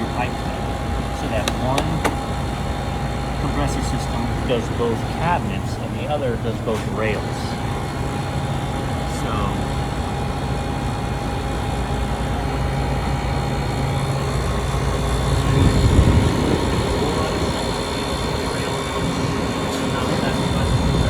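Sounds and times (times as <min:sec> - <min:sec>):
refrigeration equipment humming: 0:00.0 - 0:21.0.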